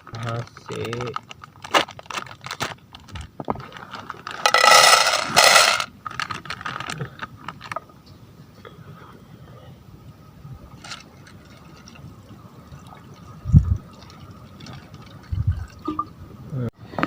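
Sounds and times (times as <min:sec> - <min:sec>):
dry pasta rattling: 0:00.0 - 0:07.8, 0:10.8 - 0:12.0.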